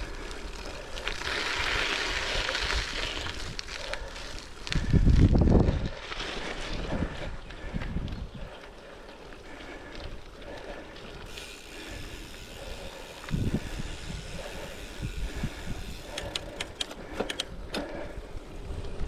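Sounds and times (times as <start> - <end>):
bike tyres crunching over gravel: 0.0 - 19.0
wind on microphone: 4.6 - 8.5, 12.8 - 16.8
sharp ticks: 14.9 - 17.6.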